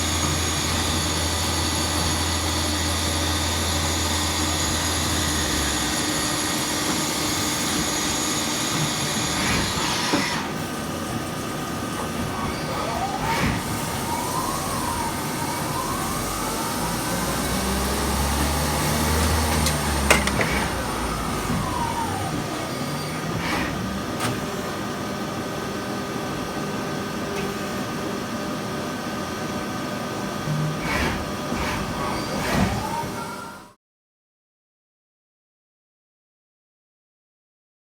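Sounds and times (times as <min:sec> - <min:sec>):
lathe motor whine: 0:00.0 - 0:30.2.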